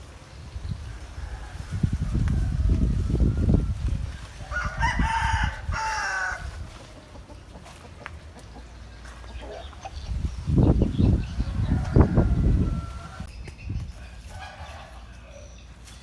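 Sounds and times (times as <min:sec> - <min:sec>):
rooster crowing: 0:01.0 - 0:06.6, 0:11.2 - 0:13.3.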